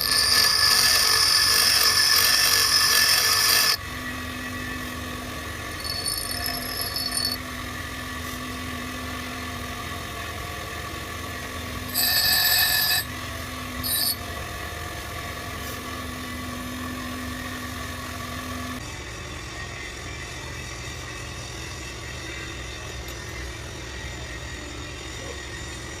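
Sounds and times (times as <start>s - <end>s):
loud high-pitched screeches: 0.0s - 3.8s, 5.8s - 7.4s, 11.9s - 13.1s, 13.8s - 14.2s
workshop machine humming: 0.0s - 26.0s.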